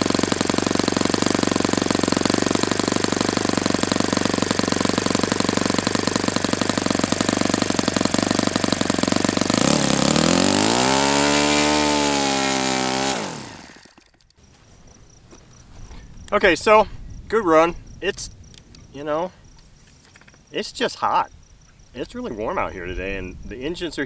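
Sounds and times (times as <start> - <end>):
model airplane engine running: 0.0 - 14.2.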